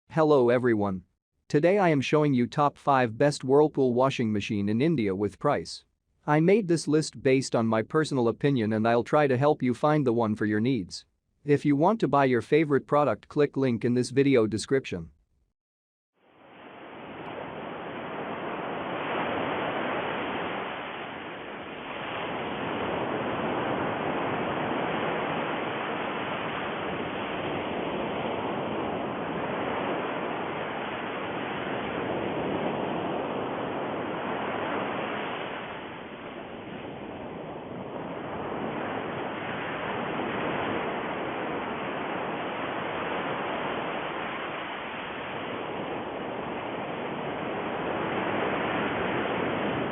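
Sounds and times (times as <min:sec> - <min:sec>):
steady rushing noise: 0:16.3 - 0:49.9.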